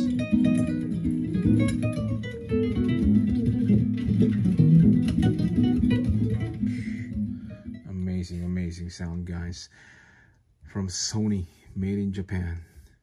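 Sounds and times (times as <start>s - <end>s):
guitar music with bass: 0.0s - 9.2s.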